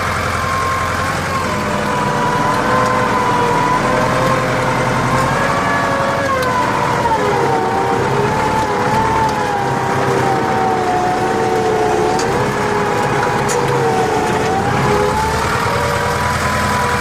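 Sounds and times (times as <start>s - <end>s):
tractor engine rumbling: 0.0s - 17.0s.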